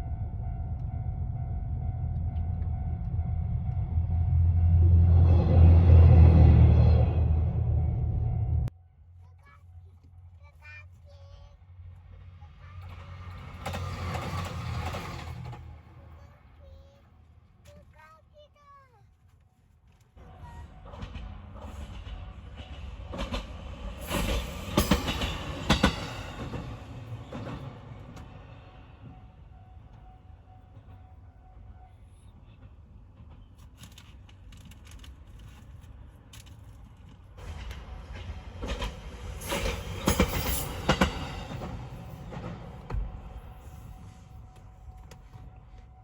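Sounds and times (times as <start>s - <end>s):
train wheels clacking on rails: 12.6s - 16.0s, 20.2s - 30.0s, 37.2s - 45.8s.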